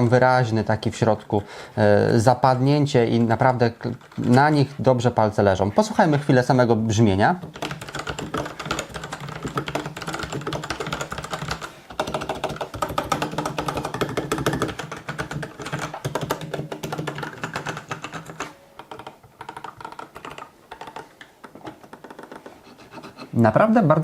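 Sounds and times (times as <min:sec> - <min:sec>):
fast typing on mechanical keyboard: 0:03.2 - 0:04.7, 0:07.4 - 0:21.1.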